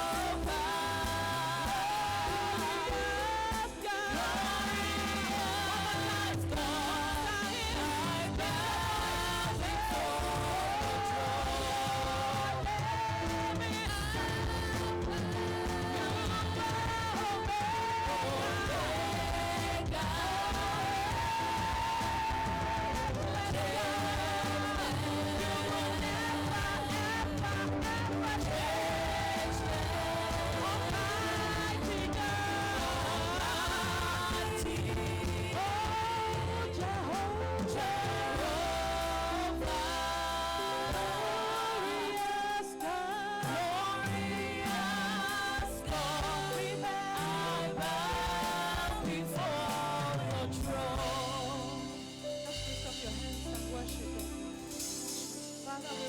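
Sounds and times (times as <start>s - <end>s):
low bass: 0.0s - 41.2s
drum beat: 0.0s - 55.1s
band accompaniment: 0.0s - 56.0s
people singing: 0.0s - 56.0s.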